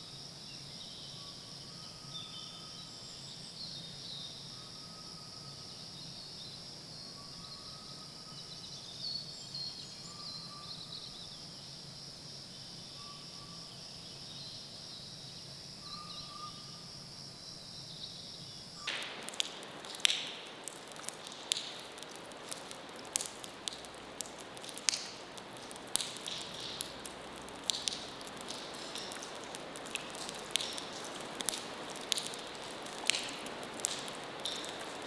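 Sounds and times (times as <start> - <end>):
insect chorus: 0.0 - 35.0
loud crackling rustling noise: 18.9 - 35.0.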